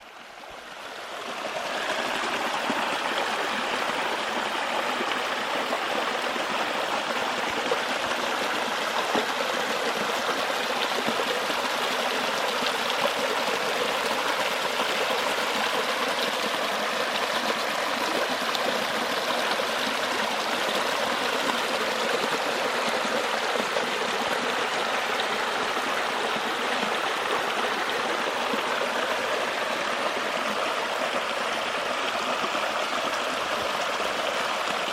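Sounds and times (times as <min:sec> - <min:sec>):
waterfall rushing: 0:00.9 - 0:05.9.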